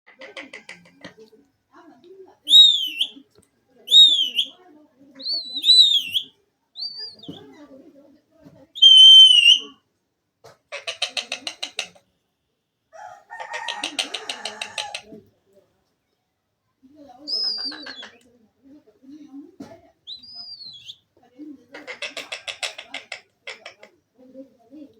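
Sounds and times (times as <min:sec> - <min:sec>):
parrot whistling: 0:02.5 - 0:03.1, 0:03.9 - 0:04.5, 0:05.2 - 0:07.3, 0:08.8 - 0:09.7, 0:17.3 - 0:18.2, 0:20.1 - 0:21.0.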